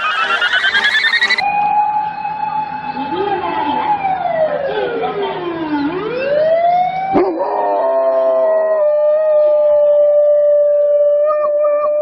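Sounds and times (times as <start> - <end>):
dog howling: 7.2 - 12.0.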